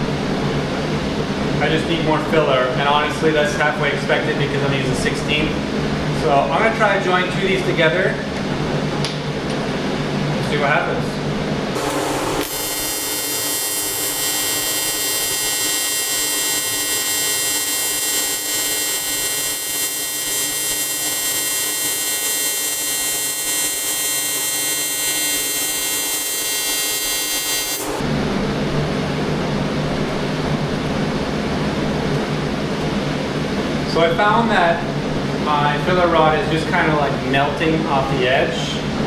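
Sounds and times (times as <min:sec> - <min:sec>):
low hum: 0:11.7 - 0:28.9
welding arc buzzing hiss: 0:11.8 - 0:28.1.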